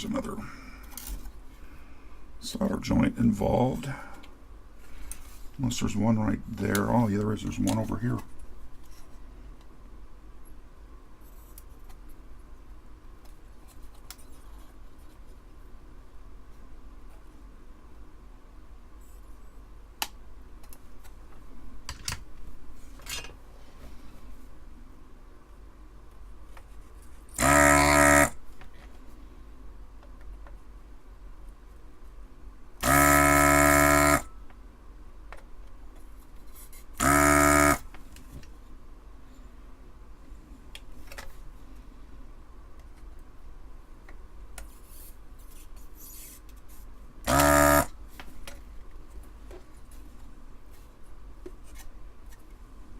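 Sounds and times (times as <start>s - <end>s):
steady low hum: 0.0s - 52.9s
desoldering vacuum pump buzzing: 27.3s - 28.4s, 32.8s - 34.3s, 37.0s - 38.0s, 47.2s - 48.0s.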